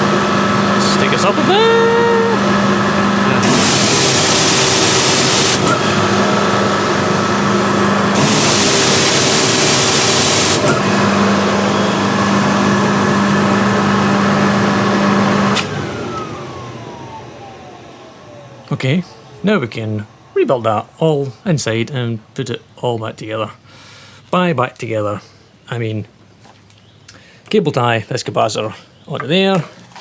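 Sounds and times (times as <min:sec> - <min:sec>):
pressure washer burner rushing: 0:00.0 - 0:19.0
motor winding down whine: 0:00.0 - 0:21.0
spray lance hissing: 0:03.4 - 0:05.8, 0:08.1 - 0:10.9.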